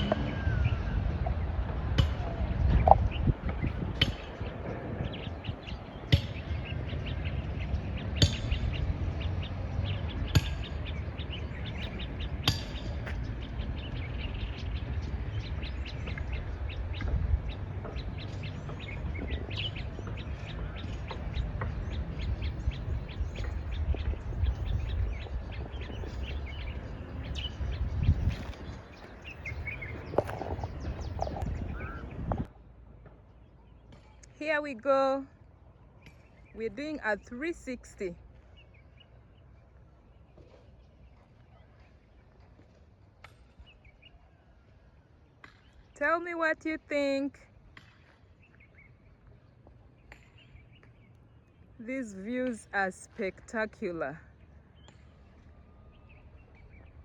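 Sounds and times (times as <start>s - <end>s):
wind rumbling on microphone: 0.0s - 33.0s
birds chirping: 0.0s - 57.0s.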